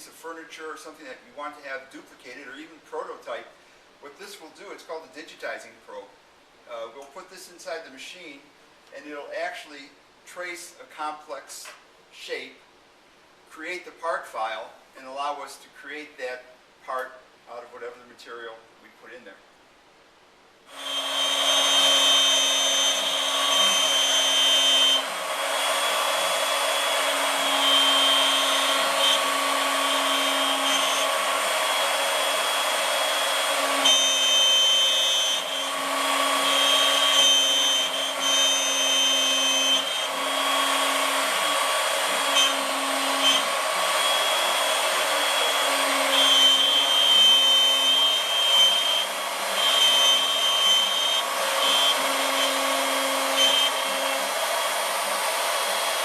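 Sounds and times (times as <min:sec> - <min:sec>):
router motor running: 0:20.7 - 0:56.0
whining tones: 0:20.8 - 0:54.6.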